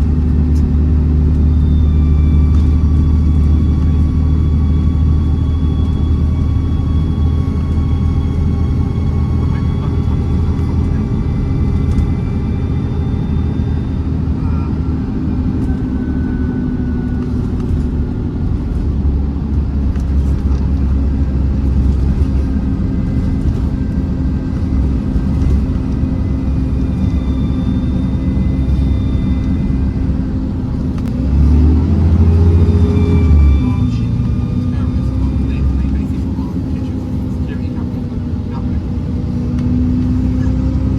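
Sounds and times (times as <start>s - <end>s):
bus diesel engine running hard: 0.0s - 40.9s
turbo whistle: 32.3s - 35.0s.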